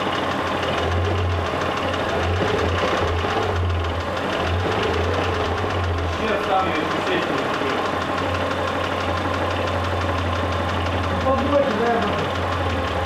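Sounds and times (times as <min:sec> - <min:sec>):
engine running with ticking knock: 0:00.0 - 0:13.0.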